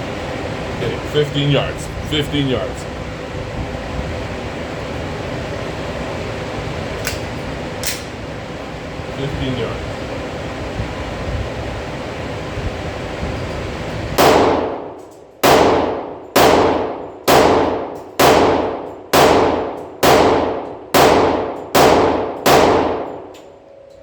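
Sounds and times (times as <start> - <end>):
ventilation hiss: 0.0 - 23.9
pistol shots echoing indoors: 14.2 - 23.5.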